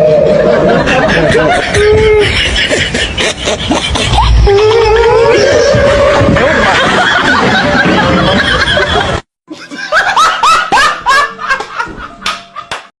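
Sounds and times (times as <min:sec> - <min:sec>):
person snickering: 0:00.6 - 0:04.9.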